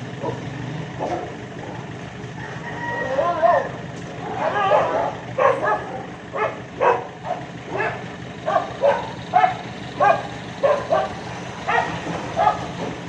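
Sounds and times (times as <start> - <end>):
dog barking: 0.2 - 1.9, 3.2 - 12.8.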